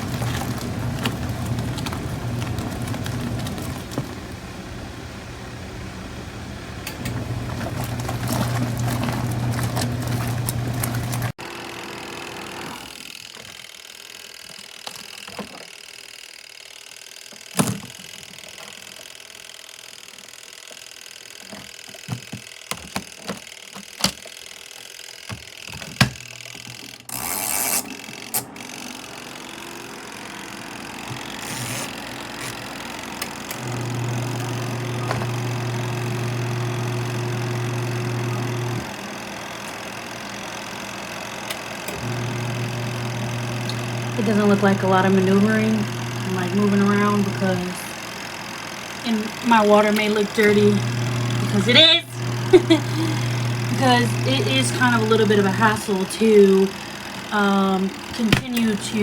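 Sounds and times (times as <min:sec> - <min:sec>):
washing machine motor humming: 0:00.0 - 0:13.6, 0:21.0 - 0:59.0.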